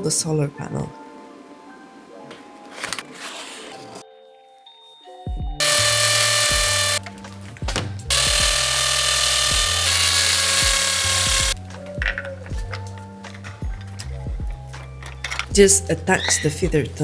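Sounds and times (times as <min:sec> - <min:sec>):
cordless drill motor whine: 0:05.6 - 0:07.0, 0:08.1 - 0:11.6.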